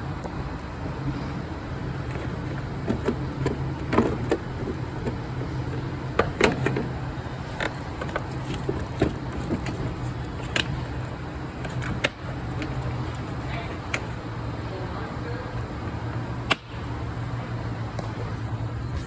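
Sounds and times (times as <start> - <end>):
light clicks and knocks: 2.0 - 14.2.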